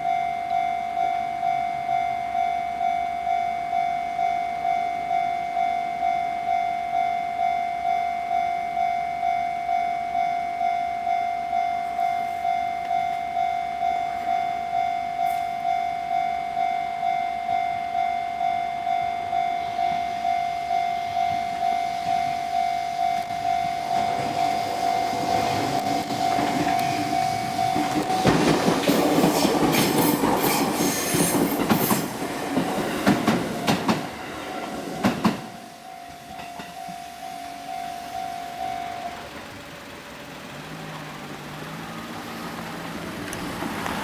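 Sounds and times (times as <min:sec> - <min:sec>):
level crossing alarm dinging: 0:00.0 - 0:40.4
approaching train rumble: 0:18.9 - 0:44.0.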